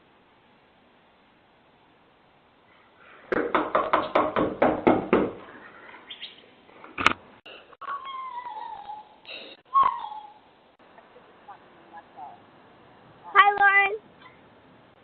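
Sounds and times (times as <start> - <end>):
hand knocking on door: 3.3 - 5.4
high wavering cry: 7.8 - 10.6.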